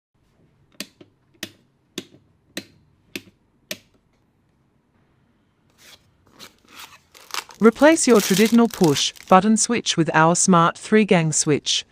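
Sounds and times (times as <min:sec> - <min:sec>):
wall switch clicking: 0:00.7 - 0:04.0.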